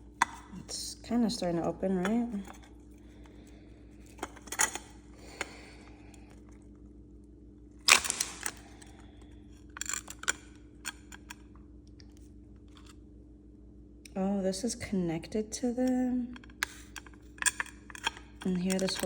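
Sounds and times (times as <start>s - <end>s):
oyster shell crunching: 7.8s - 11.4s.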